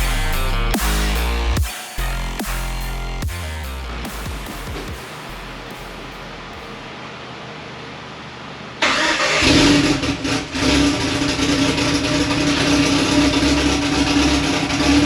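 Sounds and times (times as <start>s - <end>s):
car engine starting and idling: 3.8s - 15.0s.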